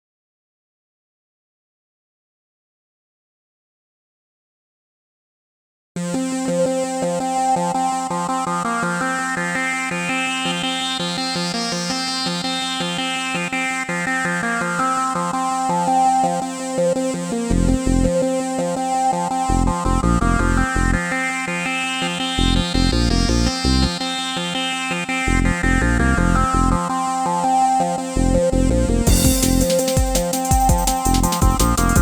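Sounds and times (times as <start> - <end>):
pulsing kick drum beat: 29.1 - 32.0.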